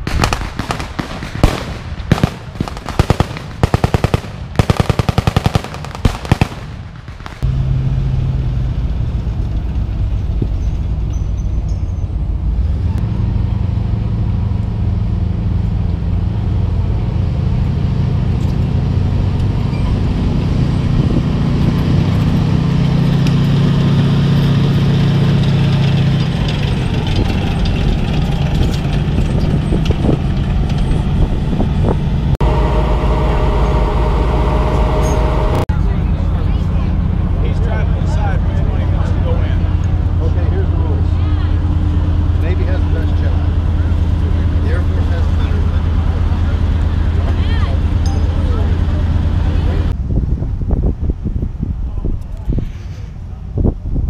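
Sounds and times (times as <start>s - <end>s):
automatic gunfire: 0.0s - 7.4s
heavy vehicle engine droning: 0.0s - 50.2s.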